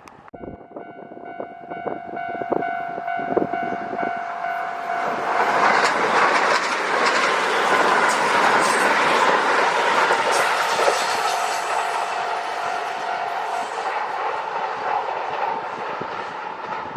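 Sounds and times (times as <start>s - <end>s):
electric train rushing past: 0.1s - 16.9s
level crossing warning tone: 0.4s - 7.8s, 9.6s - 14.9s.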